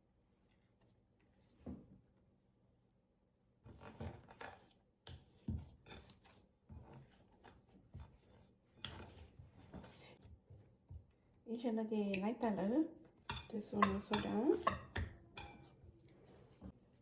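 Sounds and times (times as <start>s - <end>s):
utensils clinking against dishes: 13.2s - 16.8s.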